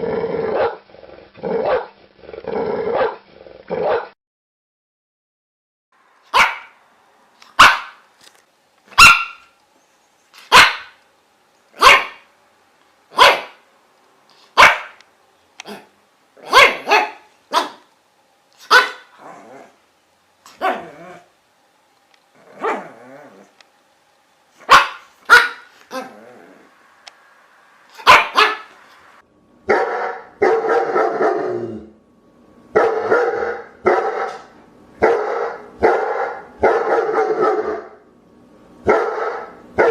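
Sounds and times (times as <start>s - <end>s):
dog barking: 0.5s - 0.8s, 1.6s - 2.0s, 2.9s - 3.2s, 3.8s - 4.2s, 6.3s - 6.8s, 7.6s - 8.0s, 8.9s - 9.5s, 10.5s - 11.0s, 11.8s - 12.3s, 13.1s - 13.6s, 14.6s - 15.0s, 15.7s - 17.9s, 18.6s - 19.1s, 20.6s - 21.0s, 22.6s - 23.0s, 24.6s - 26.1s, 28.0s - 28.7s, 29.7s - 31.5s, 32.8s - 38.0s, 38.8s - 39.9s.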